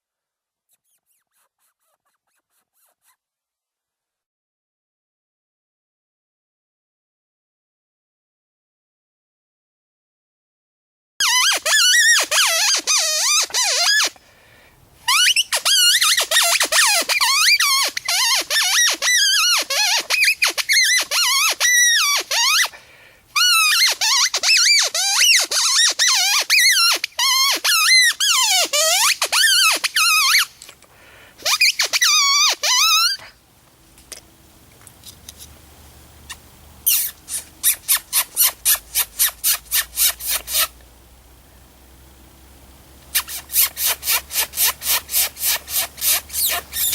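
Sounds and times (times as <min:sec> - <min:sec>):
predator call squealing: 0:11.2 - 0:14.2, 0:15.1 - 0:22.8, 0:23.4 - 0:30.5, 0:31.4 - 0:33.4, 0:36.3 - 0:40.8, 0:43.1 - 0:46.9.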